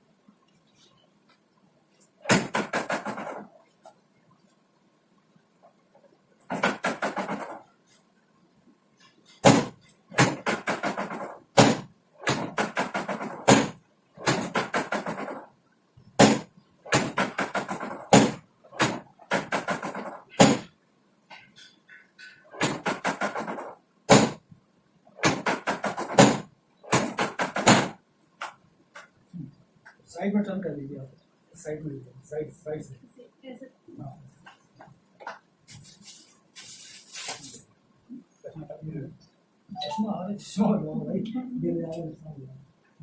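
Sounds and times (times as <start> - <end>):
sharp knocks: 6.5 - 7.6, 9.4 - 15.4, 16.2 - 20.7, 22.2 - 24.5, 25.2 - 28.0.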